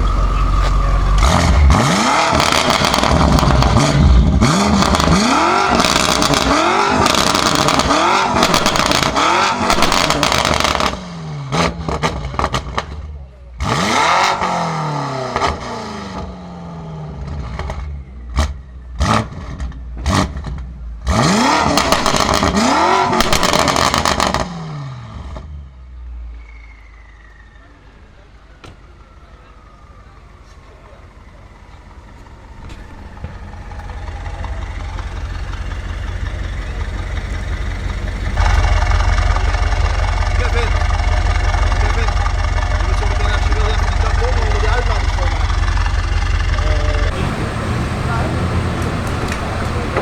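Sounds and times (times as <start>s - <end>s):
exhaust crackles and pops: 0.0s - 13.8s, 21.4s - 24.5s, 31.4s - 50.0s
car engine revving: 0.0s - 25.4s, 29.1s - 50.0s.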